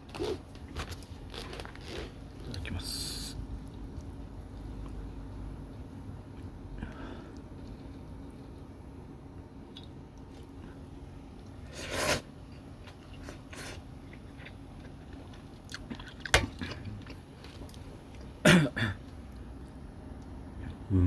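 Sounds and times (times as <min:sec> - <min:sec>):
person chewing: 0:00.1 - 0:02.6, 0:11.4 - 0:18.4.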